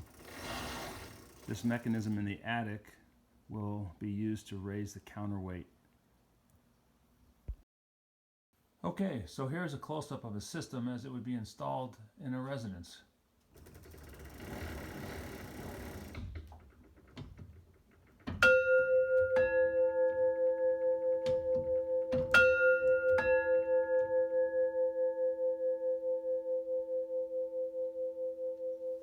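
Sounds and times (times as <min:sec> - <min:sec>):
two-note doorbell chime: 0:18.4 - 0:29.0.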